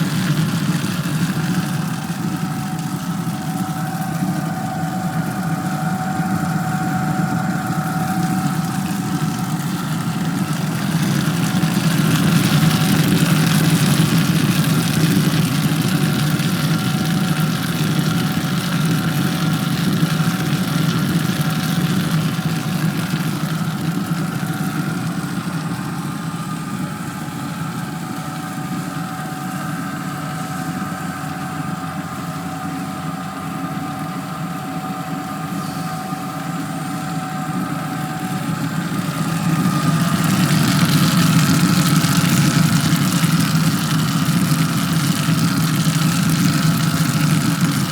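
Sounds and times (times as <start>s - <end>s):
stone grinder motor hum: 35.4s - 47.9s.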